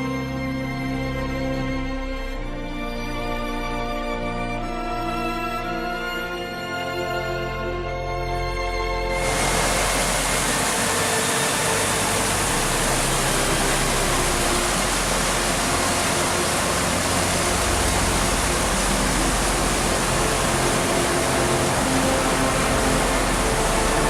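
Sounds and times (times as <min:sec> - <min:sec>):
rushing mountain torrent: 0:09.1 - 0:24.0.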